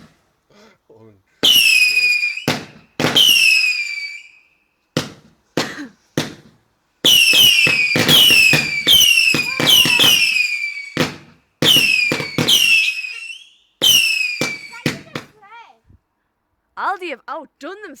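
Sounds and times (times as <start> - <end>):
whistling firework shots: 0.0 - 0.3, 1.4 - 15.4
firework cracks: 0.0 - 0.4, 1.4 - 15.7.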